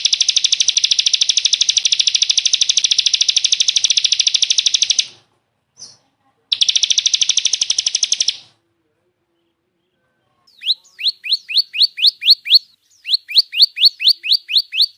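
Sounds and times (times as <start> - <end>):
songbird chattering trill: 0.0 - 5.2, 5.8 - 8.5, 10.5 - 14.9
rising whistled bird notes: 10.5 - 14.9.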